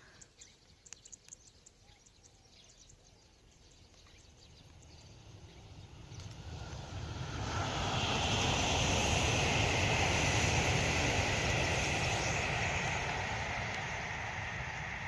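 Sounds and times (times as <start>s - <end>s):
train rumble and hiss: 6.4s - 15.0s.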